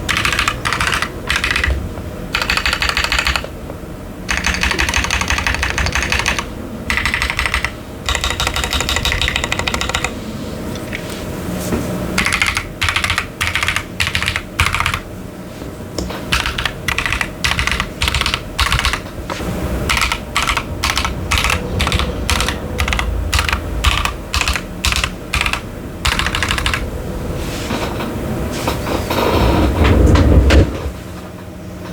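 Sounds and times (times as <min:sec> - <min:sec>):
mechanical keyboard typing: 0:00.0 - 0:03.5, 0:04.3 - 0:10.2, 0:12.2 - 0:15.1, 0:16.3 - 0:19.1, 0:19.9 - 0:26.9
low background hum: 0:00.0 - 0:31.9.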